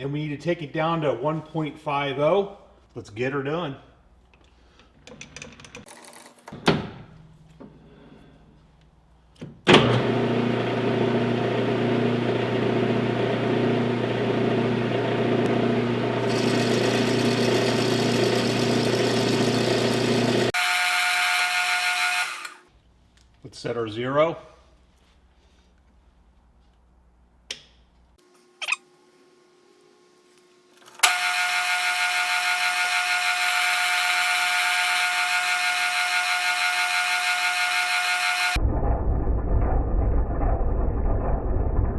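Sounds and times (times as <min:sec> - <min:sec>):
metal lathe running: 0:12.6 - 0:22.6, 0:31.0 - 0:38.6.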